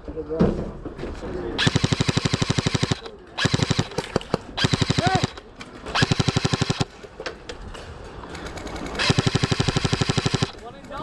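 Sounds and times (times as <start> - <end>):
airsoft gun firing: 1.6 - 6.9, 8.9 - 10.6.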